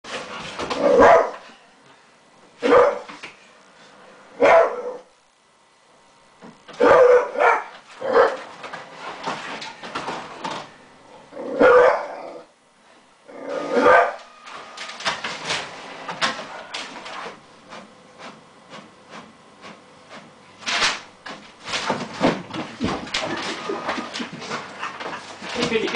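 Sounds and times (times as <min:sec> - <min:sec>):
dog barking: 0:00.9 - 0:01.4, 0:02.6 - 0:03.1, 0:04.4 - 0:05.0, 0:06.8 - 0:08.4, 0:11.6 - 0:12.2, 0:13.8 - 0:14.3.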